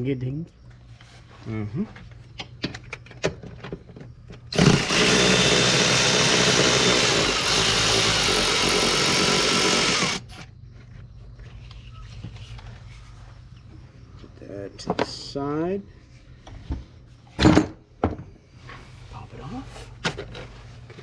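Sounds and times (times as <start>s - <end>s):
cordless power tool motor running: 4.5s - 10.4s.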